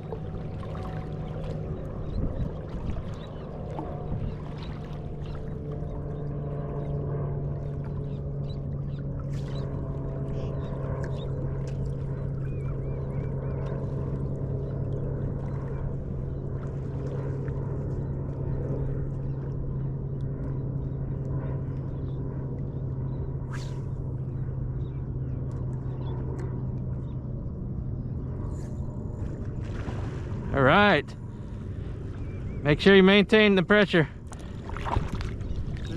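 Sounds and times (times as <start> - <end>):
boat motor humming: 0.0 - 35.9
sharp swish: 23.5 - 23.9.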